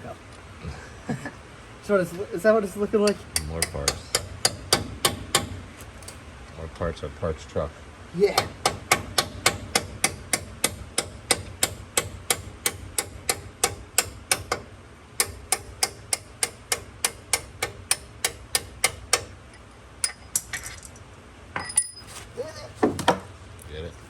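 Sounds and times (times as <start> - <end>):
hammer tapping steel punch: 3.0 - 6.2, 8.4 - 20.5.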